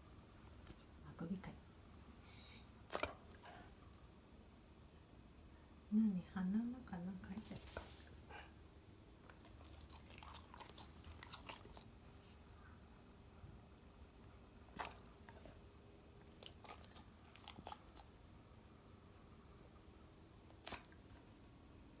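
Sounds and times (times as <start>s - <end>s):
dog mouth clicks and smacks: 2.9s - 3.5s, 14.7s - 15.5s, 16.2s - 18.1s, 20.4s - 21.4s.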